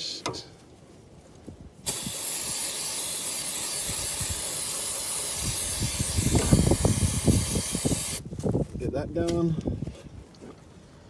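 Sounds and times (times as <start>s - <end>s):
aerosol spray hiss: 1.8s - 8.2s.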